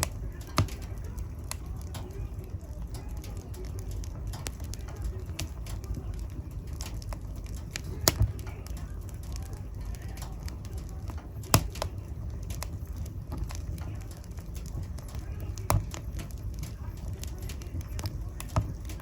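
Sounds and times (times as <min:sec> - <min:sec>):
sharp wood pops: 0:00.0 - 0:01.0, 0:08.0 - 0:08.5, 0:11.4 - 0:12.7
fire crackling: 0:00.0 - 0:19.0
fire flames rumbling: 0:00.0 - 0:19.0.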